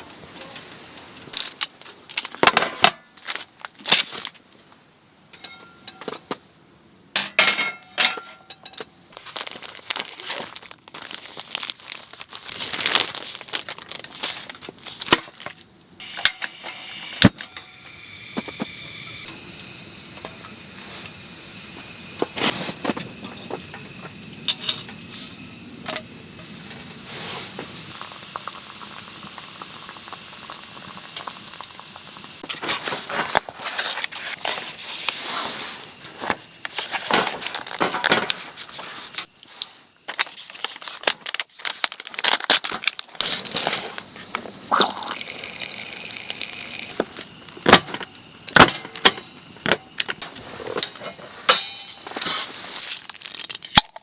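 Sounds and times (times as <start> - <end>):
cookware and utensils clinking: 5.4 - 6.3, 7.2 - 9.0, 50.2 - 52.6
crinkling: 9.1 - 15.9, 32.4 - 54.0
steady hiss: 15.9 - 41.1, 43.2 - 53.4.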